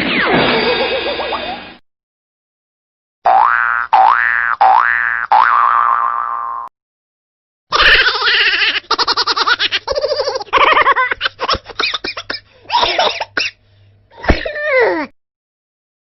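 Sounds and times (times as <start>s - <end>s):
high-pitched laughing: 7.7s - 12.3s.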